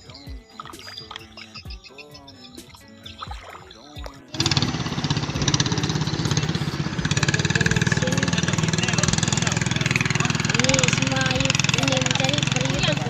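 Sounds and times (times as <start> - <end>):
boat engine running fast: 3.1 - 13.0.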